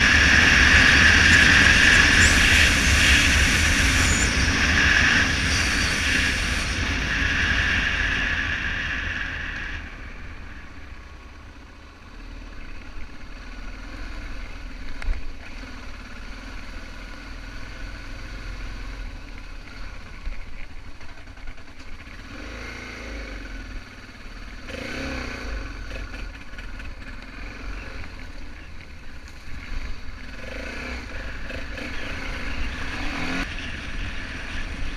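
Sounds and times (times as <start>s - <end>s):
loud rushing noise: 0.0s - 11.2s
motorcycle engine running: 0.0s - 34.9s.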